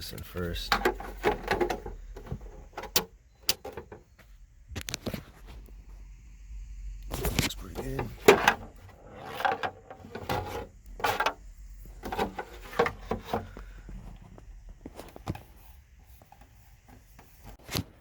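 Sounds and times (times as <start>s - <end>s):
plastic parts rubbing and knocking: 0.3s - 4.2s, 7.1s - 18.0s.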